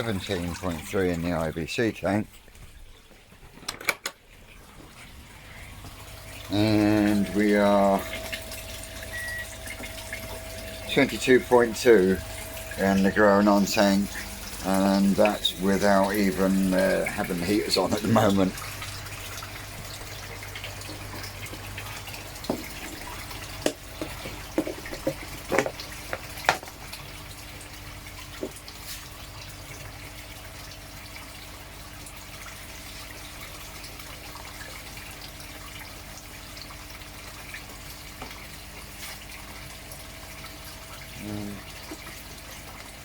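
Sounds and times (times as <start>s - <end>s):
pond water splashing and trickling: 0.0s - 43.0s
sharp knocks and clicks: 23.6s - 26.7s.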